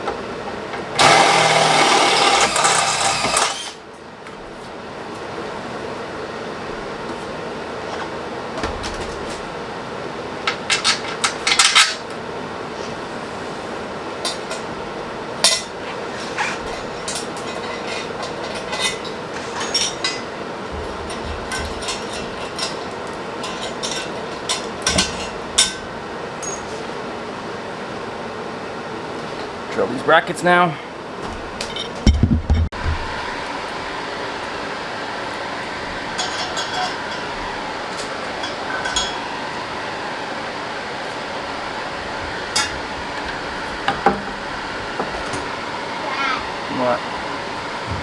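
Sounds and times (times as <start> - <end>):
fan hum: 0.0 - 48.0
metal tools clinking: 15.4 - 20.3, 21.0 - 26.8, 38.4 - 39.6.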